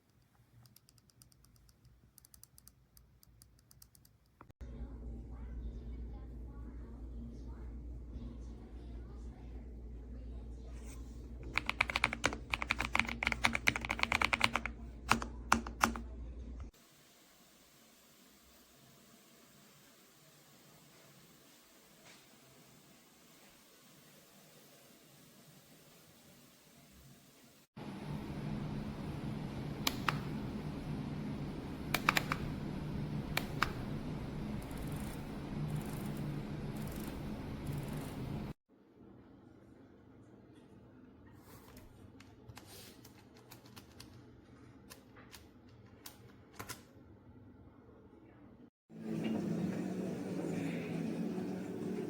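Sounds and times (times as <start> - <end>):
mechanical keyboard typing: 11.4 - 16.0, 31.9 - 32.5
low hum: 27.8 - 38.6
mechanical keyboard key clicks: 32.0 - 32.4.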